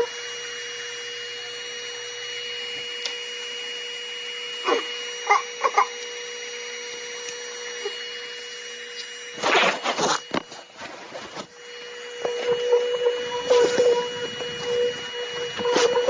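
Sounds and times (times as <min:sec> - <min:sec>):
carpet cleaner motor humming: 0:00.0 - 0:16.0
rough motor surges: 0:11.4 - 0:16.0.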